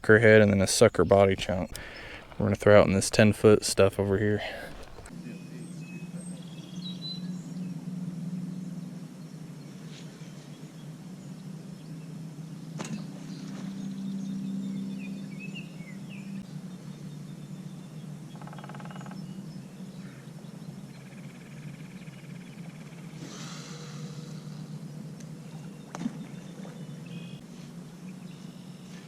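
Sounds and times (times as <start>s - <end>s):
steady low hum: 0.0s - 5.7s, 19.2s - 29.0s
bird chirps: 0.5s - 3.0s.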